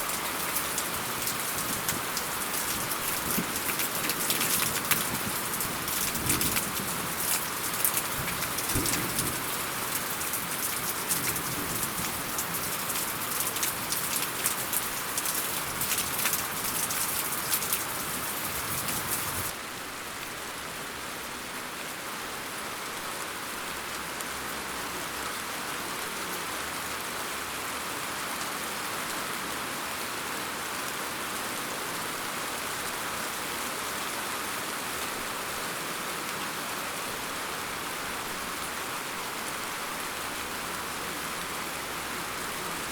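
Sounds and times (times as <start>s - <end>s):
hiss of rain: 0.0s - 42.9s
rain drops pattering: 0.0s - 42.9s.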